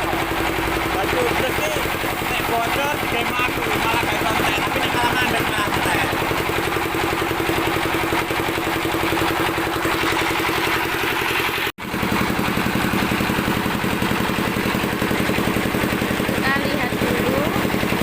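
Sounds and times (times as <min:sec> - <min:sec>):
engine idling with fast chugging: 0:00.0 - 0:18.0.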